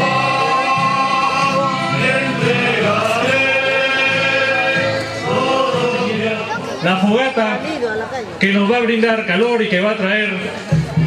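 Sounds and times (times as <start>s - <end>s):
group singing a hymn: 0.0s - 6.8s
instrumental accompaniment: 0.0s - 6.9s.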